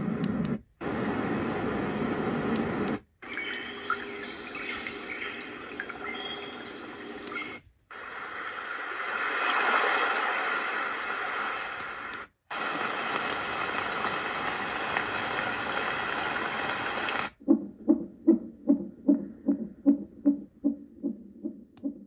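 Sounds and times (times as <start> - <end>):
white noise machine hissing: 0.0 - 17.4.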